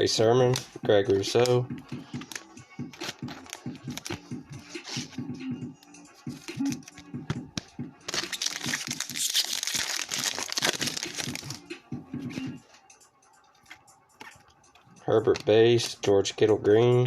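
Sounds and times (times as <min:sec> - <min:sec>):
plastic wrapper tearing and crinkling: 0:08.1 - 0:11.6.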